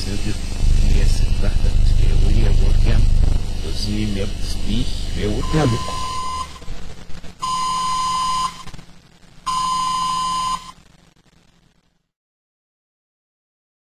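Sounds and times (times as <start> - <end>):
faint low hum: 0.0 - 10.7
microwave timer beeping: 5.4 - 6.6, 7.4 - 8.7, 9.5 - 10.7.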